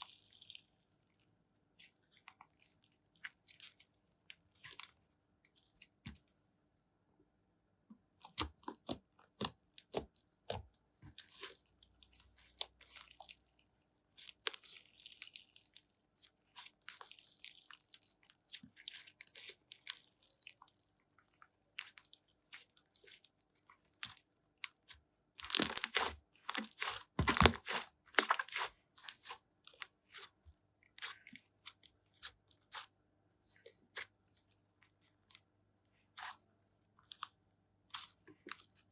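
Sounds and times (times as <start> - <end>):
slime squished by hand: 23.9 - 32.9, 37.0 - 38.9.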